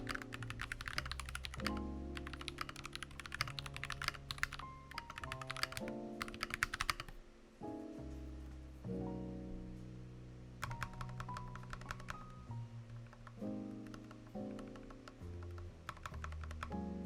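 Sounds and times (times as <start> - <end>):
fast typing on mechanical keyboard: 0.0 - 7.2, 10.6 - 16.8
background music: 0.0 - 17.0.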